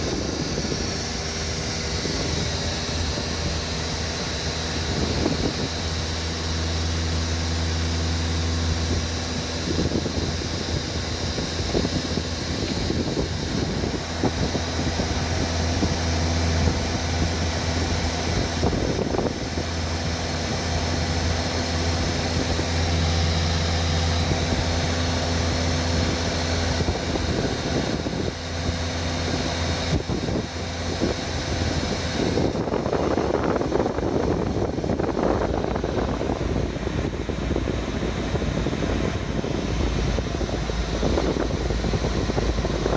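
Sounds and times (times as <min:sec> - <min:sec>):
fan whirring: 0:00.0 - 0:42.9
vehicle engine humming: 0:00.0 - 0:42.9.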